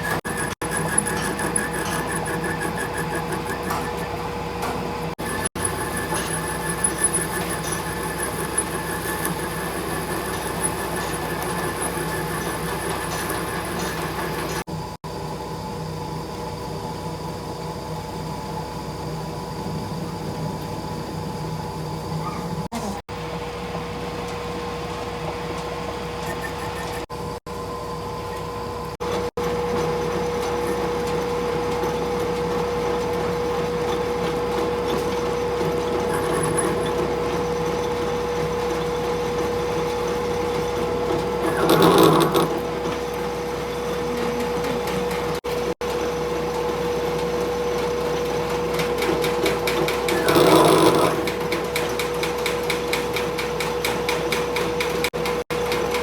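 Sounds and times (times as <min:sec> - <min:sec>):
rasping bursts: 0:00.0 - 0:04.2, 0:41.2 - 0:42.8, 0:49.5 - 0:52.2.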